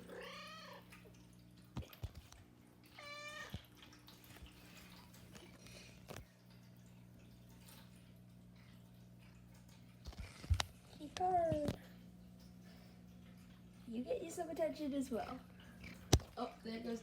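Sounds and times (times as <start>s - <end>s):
low steady hum: 0.0s - 17.0s
cat meowing: 3.0s - 3.6s.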